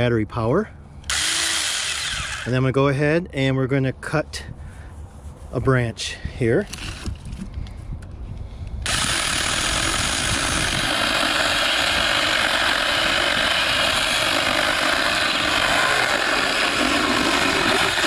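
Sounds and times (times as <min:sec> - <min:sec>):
electric chainsaw cutting branch: 0:01.0 - 0:02.7, 0:06.7 - 0:07.3, 0:08.8 - 0:18.0.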